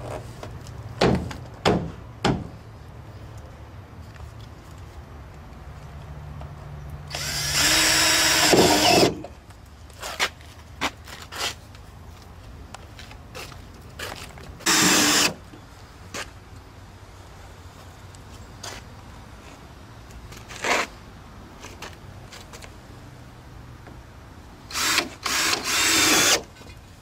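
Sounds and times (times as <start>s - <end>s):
power drill running: 7.1s - 9.2s, 14.7s - 15.4s, 24.7s - 26.4s.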